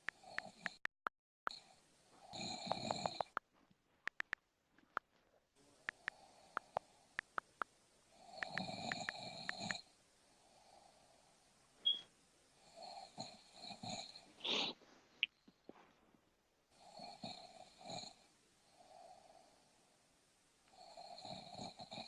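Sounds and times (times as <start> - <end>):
sharp clicks: 0.0 - 1.6, 2.7 - 3.5, 4.1 - 5.0, 5.9 - 7.7, 8.4 - 9.8
woman snoring: 2.3 - 3.2, 8.2 - 9.8, 20.8 - 22.0.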